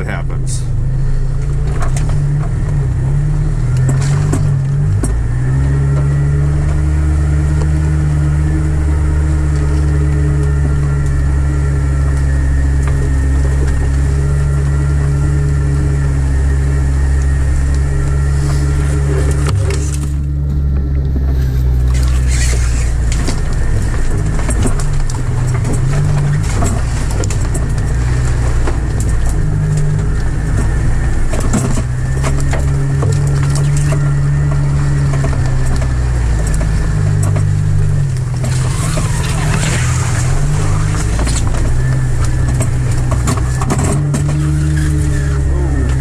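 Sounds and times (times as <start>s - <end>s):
car engine at low revs: 0.0s - 46.0s
knocks and rattles: 3.8s - 8.4s, 17.3s - 46.0s.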